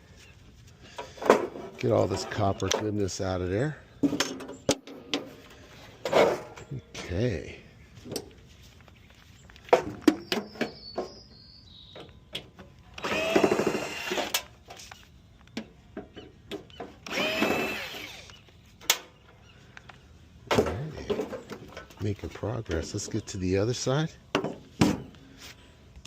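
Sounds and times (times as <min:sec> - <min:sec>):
handheld power tool running: 0:13.0 - 0:14.4, 0:17.0 - 0:18.4.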